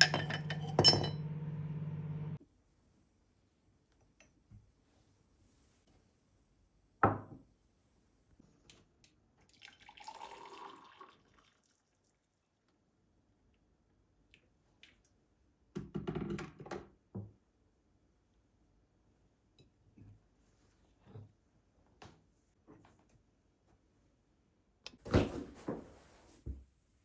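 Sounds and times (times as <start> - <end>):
water running: 0.0 - 2.4.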